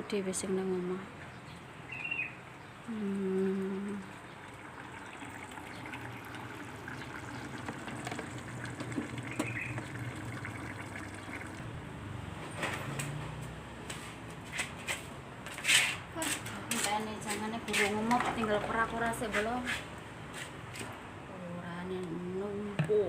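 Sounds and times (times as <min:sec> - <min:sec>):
liquid flowing: 0:03.3 - 0:11.8.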